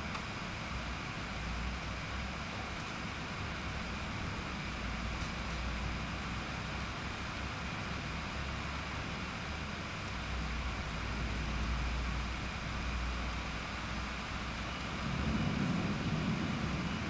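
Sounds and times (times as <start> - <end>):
distant thunder rumbling: 14.8 - 17.0.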